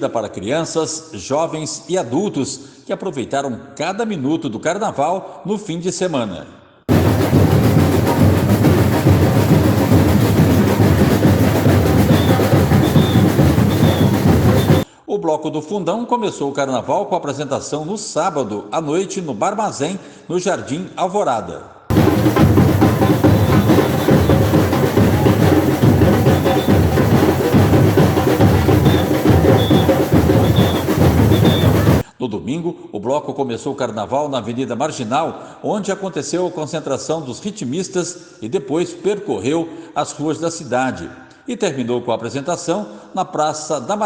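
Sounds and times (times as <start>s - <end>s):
samba drumming: 6.9s - 14.8s, 21.9s - 32.0s.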